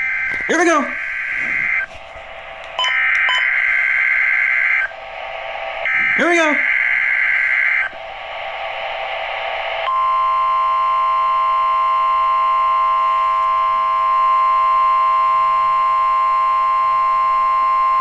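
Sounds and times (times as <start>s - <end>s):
radio static hiss: 0.0s - 10.6s
steady electronic alarm tone: 0.0s - 18.0s.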